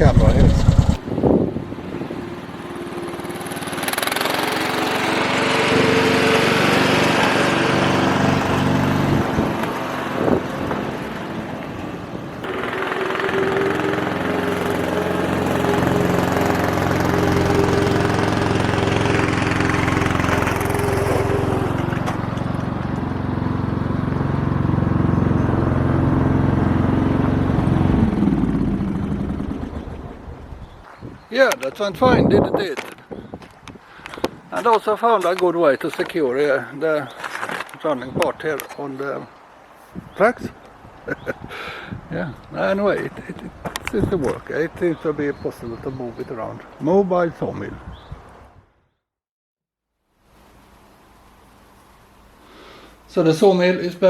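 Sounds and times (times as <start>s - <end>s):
engine running under load: 0.0s - 30.8s.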